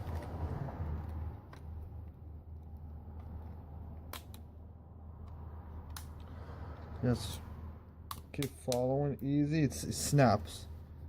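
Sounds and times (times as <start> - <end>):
plastic clips snapping: 4.0 - 4.5, 5.2 - 6.3, 8.1 - 9.3.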